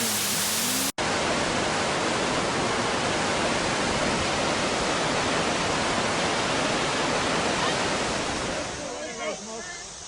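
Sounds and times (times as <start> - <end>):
waterfall pouring: 0.0 - 1.0.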